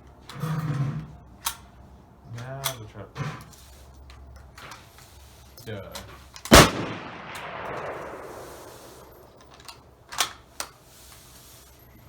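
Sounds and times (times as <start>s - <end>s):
rifle shot echo: 6.5s - 9.3s
sharp cracks: 6.5s - 9.8s.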